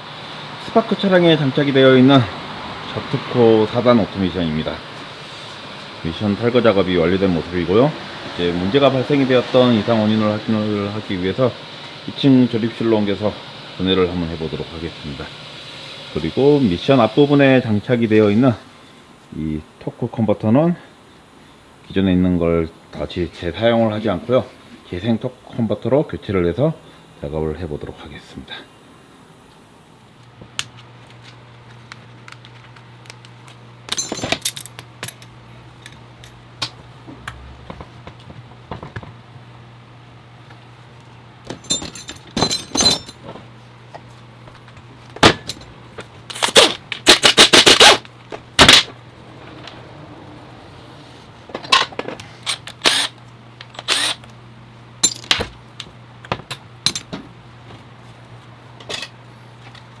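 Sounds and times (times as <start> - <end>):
steady low hum: 0.0 - 60.0
metal parts clanking and scraping: 33.9 - 35.3, 41.5 - 43.4, 46.3 - 48.0, 51.5 - 54.3, 55.0 - 55.6, 58.8 - 59.2.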